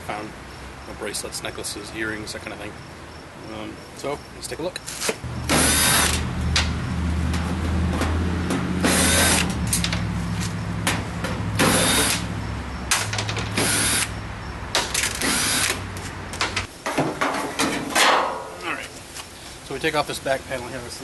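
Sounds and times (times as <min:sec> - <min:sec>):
power drill backing out screws: 0:04.9 - 0:06.2, 0:08.8 - 0:10.0, 0:11.6 - 0:12.2, 0:13.1 - 0:14.1, 0:14.8 - 0:15.8
steady low hum: 0:05.2 - 0:16.4.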